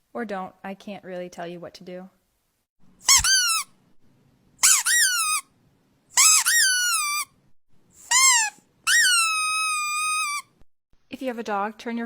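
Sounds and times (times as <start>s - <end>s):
squeaky toy squeaks: 3.0s - 3.7s, 4.6s - 5.5s, 6.2s - 7.4s, 8.0s - 10.6s.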